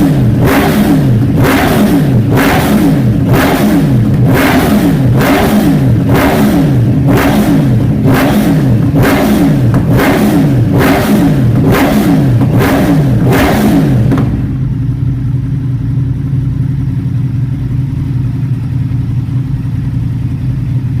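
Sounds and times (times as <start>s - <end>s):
motorcycle engine revving: 0.0s - 16.1s
motorcycle engine idling: 0.0s - 21.0s.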